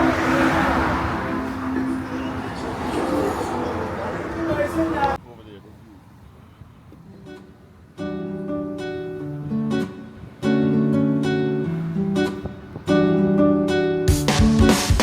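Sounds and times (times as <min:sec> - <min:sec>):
strummed acoustic guitar chords: 0:07.3 - 0:15.0
drums: 0:14.0 - 0:15.0.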